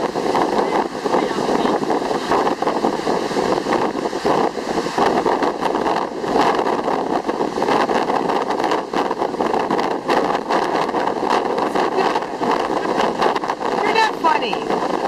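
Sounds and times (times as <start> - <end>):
strong wind on microphone: 0.0 - 15.0.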